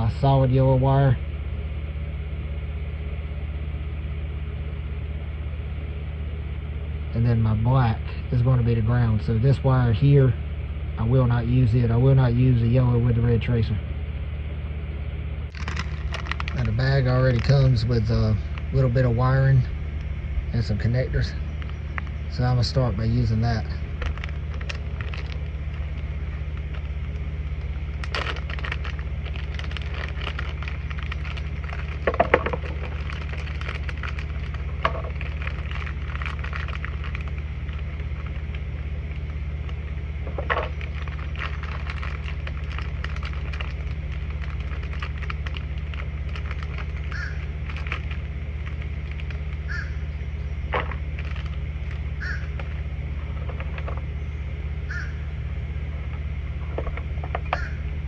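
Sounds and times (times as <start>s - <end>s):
low hum: 0.0s - 58.0s
wires and connectors clicking: 15.5s - 17.9s, 23.2s - 49.8s, 50.7s - 54.1s
crow cawing: 47.0s - 47.6s, 49.6s - 50.2s, 52.2s - 52.6s, 54.9s - 55.3s, 57.5s - 57.8s.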